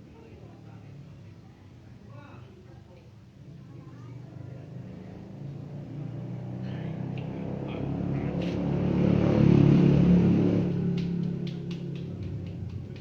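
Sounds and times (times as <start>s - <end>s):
vehicle engine rumbling: 5.3s - 13.0s.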